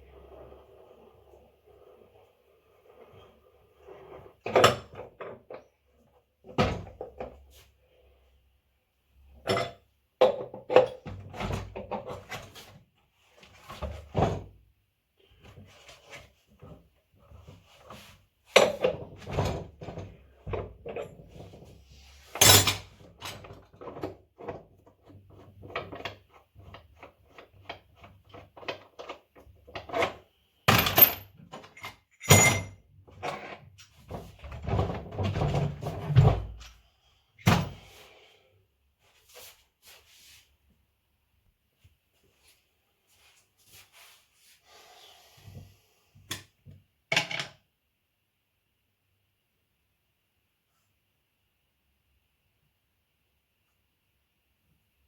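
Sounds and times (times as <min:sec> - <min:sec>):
tools and parts clattering: 0:22.3 - 0:24.6, 0:28.3 - 0:36.8.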